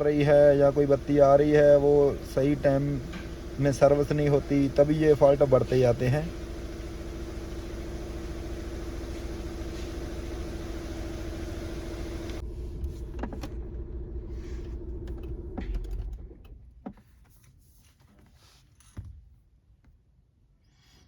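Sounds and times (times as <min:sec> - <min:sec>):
car engine running: 0:00.0 - 0:16.6.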